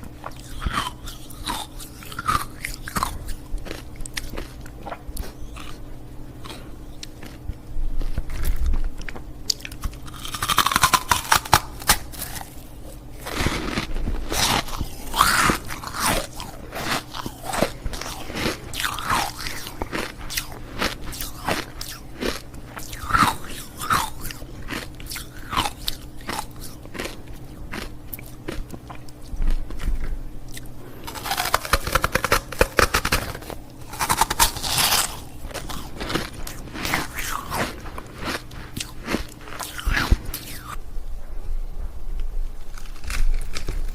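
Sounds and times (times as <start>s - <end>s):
chewing: 0.0s - 5.8s, 6.4s - 40.8s
ice cubes crunched between teeth: 0.2s - 5.8s, 8.0s - 12.6s, 13.2s - 40.7s, 42.7s - 43.9s.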